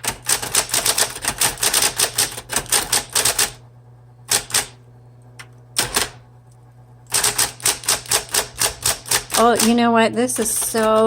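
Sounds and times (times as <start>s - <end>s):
electric typewriter keystrokes: 0.0s - 3.6s, 4.3s - 4.8s, 5.8s - 6.2s, 7.1s - 11.0s
typewriter motor hum: 0.0s - 3.6s, 4.2s - 4.8s, 5.4s - 6.2s, 7.0s - 11.0s.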